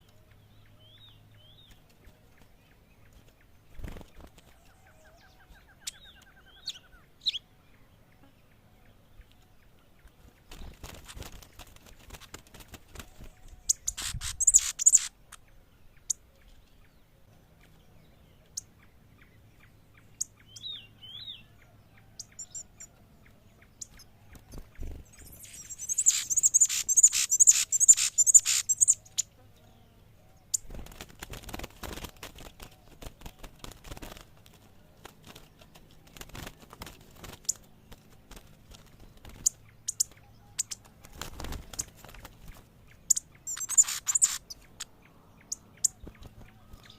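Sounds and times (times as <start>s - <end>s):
finch singing high chirps: 4.8s - 7.4s, 13.2s - 15.2s, 23.6s - 29.4s, 39.2s - 40.8s, 43.0s - 46.9s.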